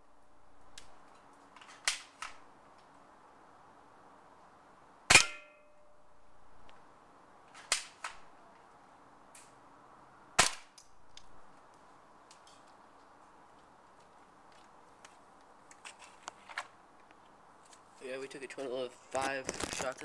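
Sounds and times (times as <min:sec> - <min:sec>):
airsoft rifle shots: 0:05.1 - 0:05.7, 0:10.4 - 0:10.8.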